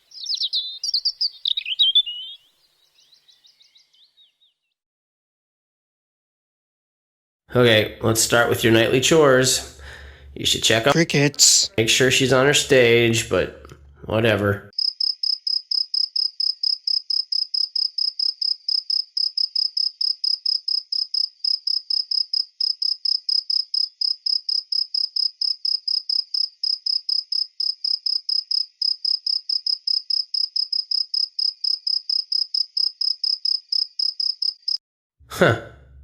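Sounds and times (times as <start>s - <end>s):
cricket chirping: 0.0s - 4.0s, 14.8s - 34.8s.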